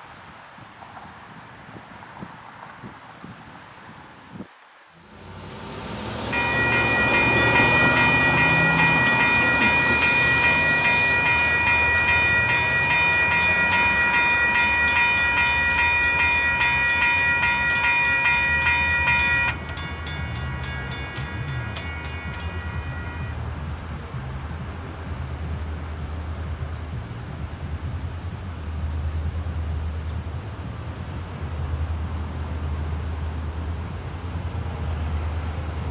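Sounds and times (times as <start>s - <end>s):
train rumbling: 0.0s - 35.9s
locomotive air horn blast: 5.6s - 20.4s, 21.4s - 23.5s.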